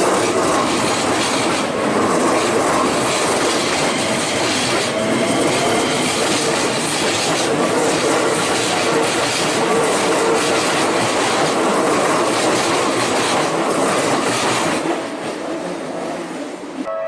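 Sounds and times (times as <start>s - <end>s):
train wheels clattering over rails: 0.0s - 15.5s.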